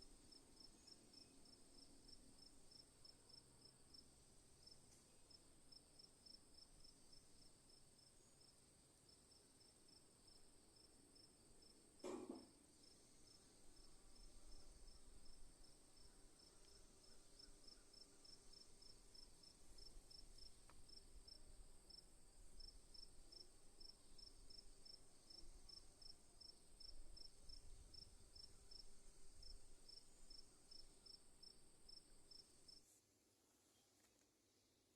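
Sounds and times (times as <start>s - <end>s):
insect chirping: 0.2s - 11.7s, 12.7s - 32.8s.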